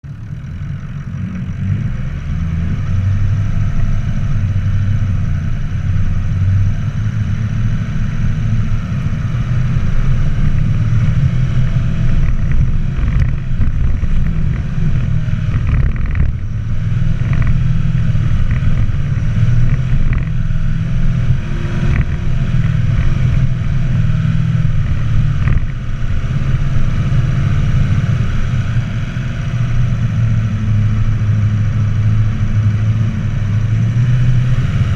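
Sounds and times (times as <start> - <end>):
off-road vehicle engine labouring: 0.0 - 34.9
knocks and clatters: 11.9 - 20.4, 24.7 - 25.8.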